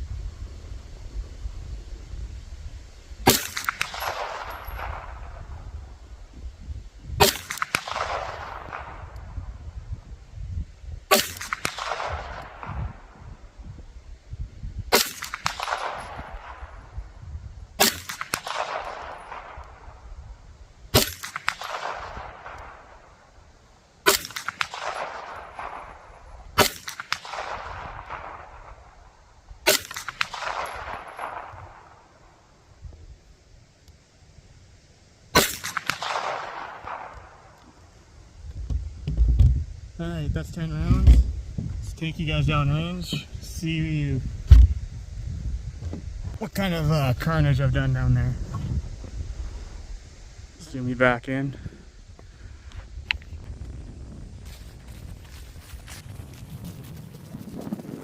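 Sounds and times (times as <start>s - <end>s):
gunshots with echo: 3.3s - 5.6s, 7.2s - 9.4s, 11.1s - 13.1s, 14.9s - 16.8s, 17.8s - 19.8s, 24.1s - 28.9s, 29.6s - 32.1s, 35.4s - 37.5s.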